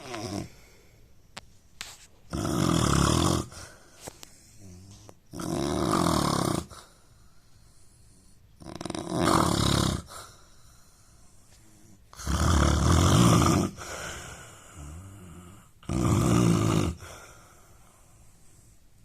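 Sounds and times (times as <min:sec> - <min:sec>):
man snoring: 0:00.0 - 0:00.6, 0:02.3 - 0:03.8, 0:04.6 - 0:06.9, 0:08.6 - 0:10.2, 0:11.7 - 0:17.2.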